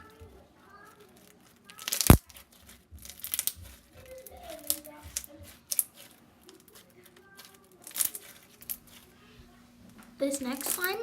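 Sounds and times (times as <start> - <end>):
slime crackling clicks and pops: 1.8 - 2.3.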